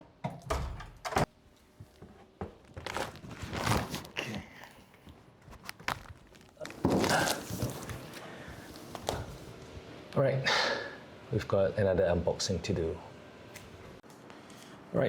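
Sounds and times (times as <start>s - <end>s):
rustling: 1.5s - 4.3s, 5.0s - 9.5s.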